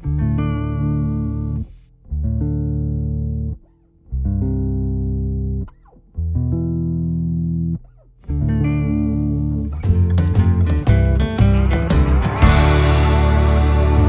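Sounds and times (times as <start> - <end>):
drums: 9.8 - 14.0
held music chords: 9.8 - 14.0.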